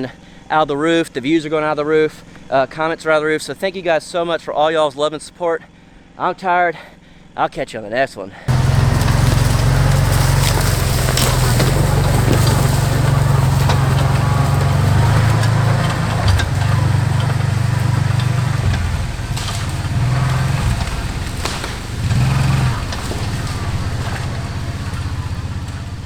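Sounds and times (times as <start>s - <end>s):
engine running at low revs: 8.5s - 26.0s.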